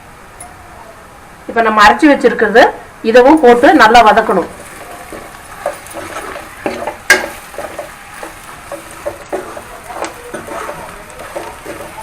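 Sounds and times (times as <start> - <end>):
food sizzling in oil: 3.1 - 12.0
spoon scraping pan: 3.4 - 12.0.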